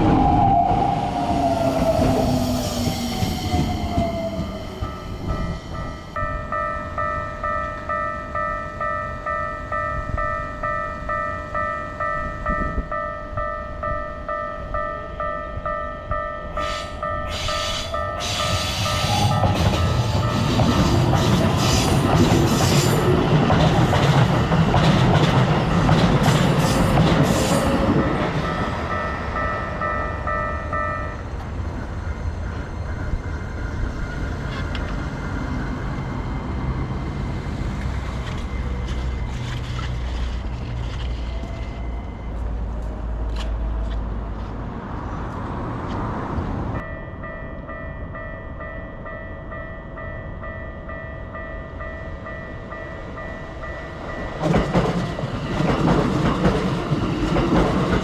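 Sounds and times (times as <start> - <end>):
low train rumble: 0.0 - 58.0
level crossing warning bell: 1.7 - 34.4, 46.8 - 58.0
train wheel clatter: 16.6 - 28.9, 54.2 - 58.0.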